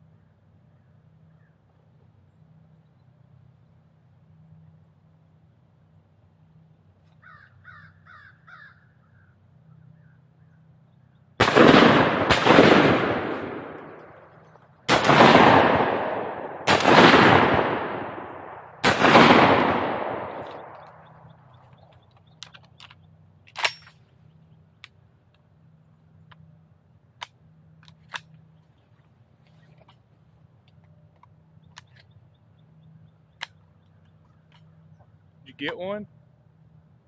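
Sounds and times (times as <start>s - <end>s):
shotgun shots: 11.4s - 21.4s.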